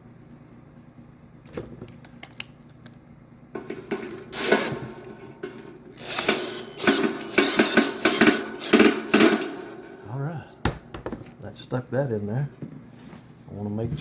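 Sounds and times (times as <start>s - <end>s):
mechanical clatter and rattle: 3.6s - 10.2s.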